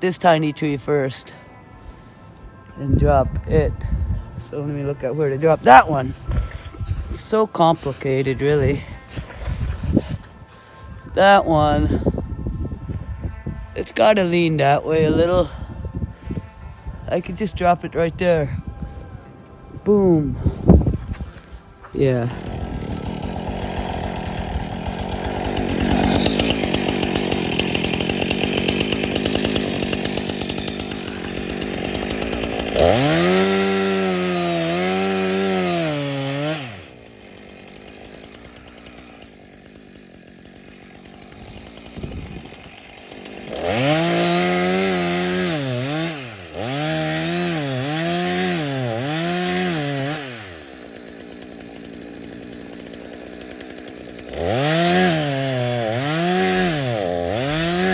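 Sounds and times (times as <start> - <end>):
chainsaw revving and idling: 2.6 - 10.4, 21.1 - 57.9.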